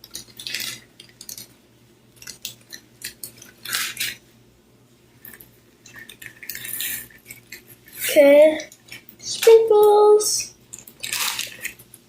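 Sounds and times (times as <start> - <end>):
plastic beads clattering into bowl: 10.8 - 11.9.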